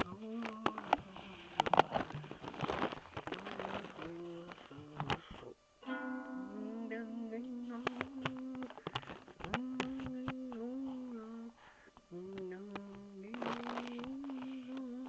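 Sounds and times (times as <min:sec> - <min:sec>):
music of long wavering tones: 0:05.8 - 0:07.8.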